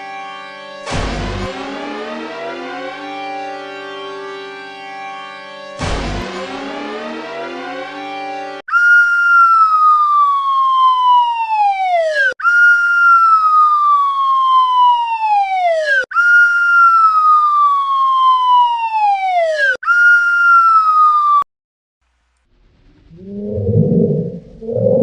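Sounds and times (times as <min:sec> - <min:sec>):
falling whistle sound effect: 0:08.7 - 0:21.5.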